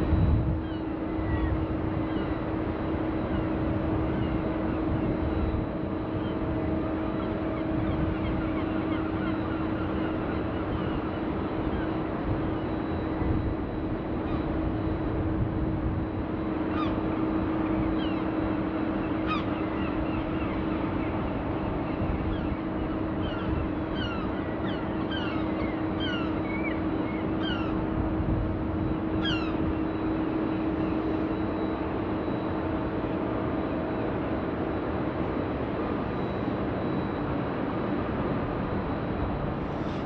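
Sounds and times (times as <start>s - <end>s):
low hum and rumble: 0.0s - 40.0s.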